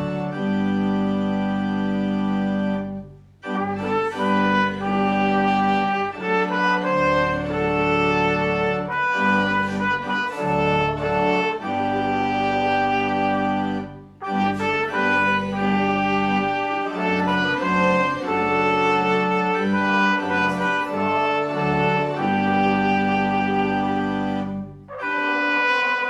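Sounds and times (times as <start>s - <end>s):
hymn music in held chords: 0.0s - 26.0s.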